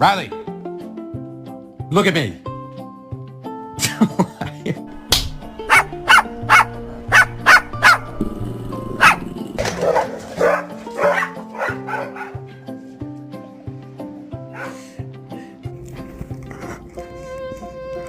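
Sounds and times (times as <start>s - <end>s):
background music: 0.0s - 18.0s
dog barking: 5.6s - 8.2s, 9.0s - 12.6s, 14.5s - 14.9s.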